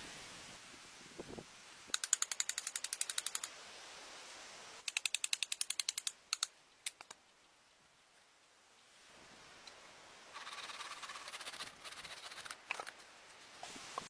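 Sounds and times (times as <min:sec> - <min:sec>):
rapid mechanical clicking: 0:01.9 - 0:03.5.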